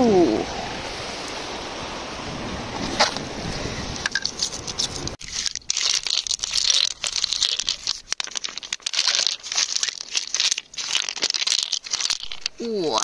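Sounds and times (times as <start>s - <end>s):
gritty crunching and scraping: 3.9s - 13.0s.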